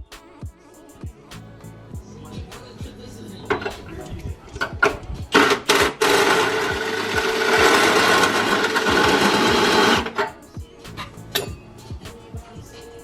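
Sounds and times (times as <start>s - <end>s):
power drill running: 5.4s - 10.3s.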